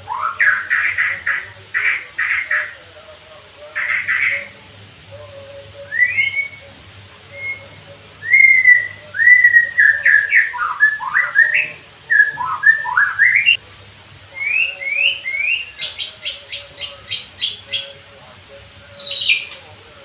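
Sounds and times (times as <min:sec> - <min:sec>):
songbird whistling: 0:00.0 - 0:02.8, 0:03.7 - 0:04.6, 0:05.7 - 0:13.6, 0:14.3 - 0:18.0, 0:18.9 - 0:19.7.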